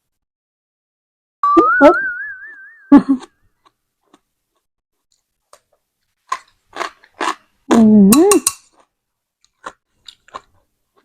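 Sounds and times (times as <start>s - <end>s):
wavering whistle-like tone: 1.4s - 3.0s
crunchy chewing: 5.5s - 7.8s, 8.6s - 11.0s.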